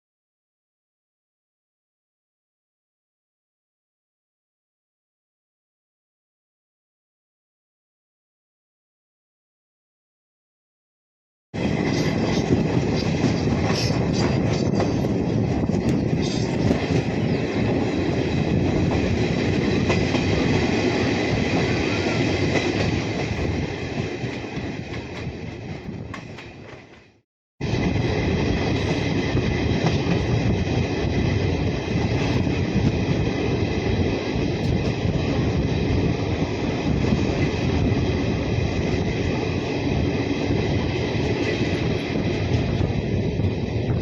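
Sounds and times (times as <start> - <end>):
train running on rails: 11.6 - 44.0.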